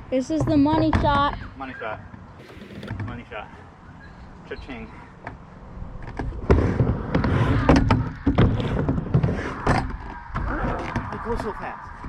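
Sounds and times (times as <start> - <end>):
skateboard wheels rolling on concrete: 5.2 - 12.0.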